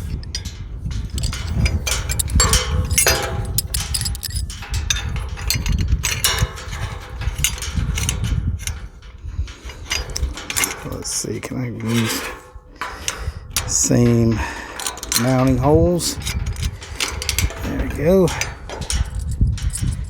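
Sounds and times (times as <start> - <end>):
metal clicks knocks and scrapes: 0.0 - 20.0
steady low rumble: 0.0 - 20.0.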